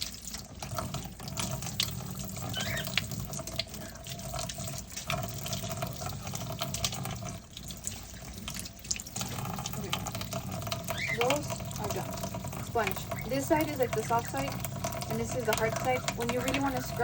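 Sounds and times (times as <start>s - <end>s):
spoons rinsed under water: 0.0s - 17.0s
tap running into a sink: 8.3s - 17.0s.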